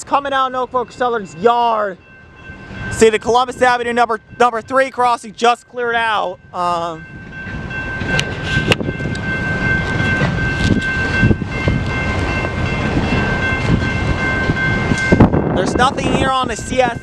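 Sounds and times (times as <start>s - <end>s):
freight train rumble: 0.0s - 17.0s
railroad crossing bell ringing: 0.0s - 17.0s.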